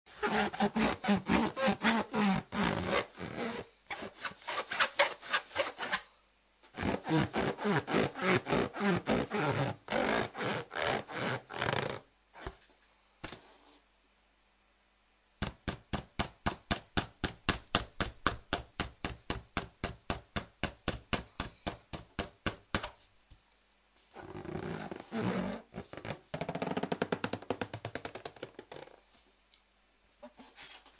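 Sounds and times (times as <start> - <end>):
balloon squeaking when rubbed: 0.1 - 6.1, 6.7 - 12.6, 24.2 - 29.0.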